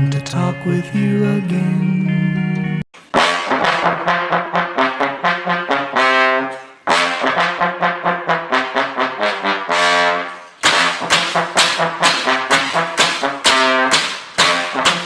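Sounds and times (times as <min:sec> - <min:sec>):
brass instruments playing a tune: 0:03.1 - 0:15.0.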